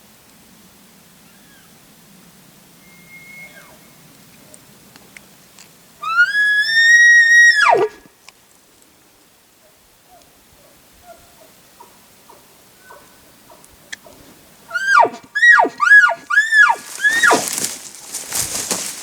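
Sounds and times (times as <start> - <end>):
elk calling: 2.8 - 4.0, 6.0 - 8.0, 11.0 - 19.0
rustling noise: 15.8 - 19.0.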